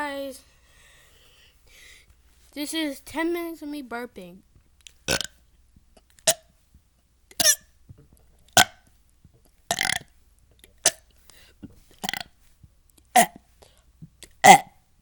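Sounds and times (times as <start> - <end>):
person burping: 5.1 - 5.4, 7.4 - 7.6, 9.7 - 10.1, 11.6 - 12.3, 13.2 - 13.4, 14.4 - 14.8.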